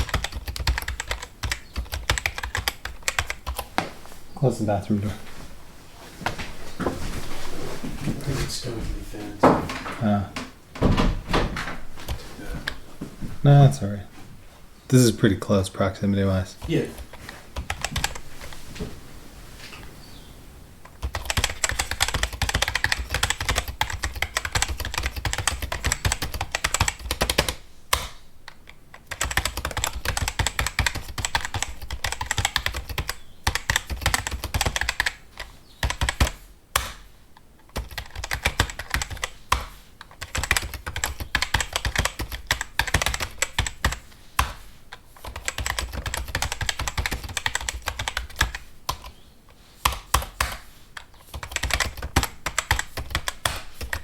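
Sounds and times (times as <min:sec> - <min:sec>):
fast typing on keyboard: 0:00.0 - 0:03.7, 0:16.5 - 0:18.2, 0:20.8 - 0:28.2, 0:28.9 - 0:37.0, 0:37.7 - 0:49.1, 0:49.8 - 0:54.0.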